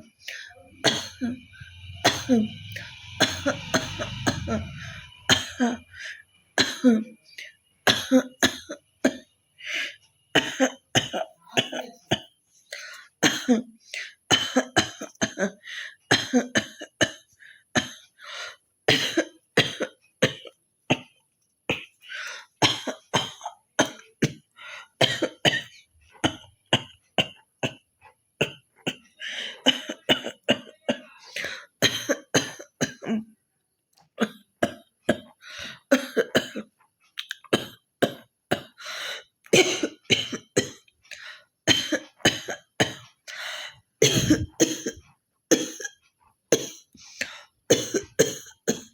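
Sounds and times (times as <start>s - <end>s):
woman coughing and hawking: 0.3s - 2.5s, 3.2s - 6.0s, 6.6s - 7.2s, 10.4s - 12.3s, 13.2s - 13.7s, 28.4s - 33.3s, 34.2s - 36.7s, 39.5s - 40.8s, 44.0s - 46.0s, 47.7s - 48.9s.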